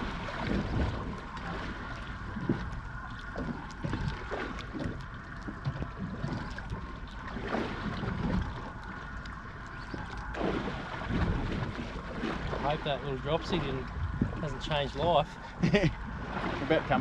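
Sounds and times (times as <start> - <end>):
wind buffeting microphone: 0.0 - 8.7, 9.7 - 17.0
water knocking against boat hull: 0.0 - 13.0.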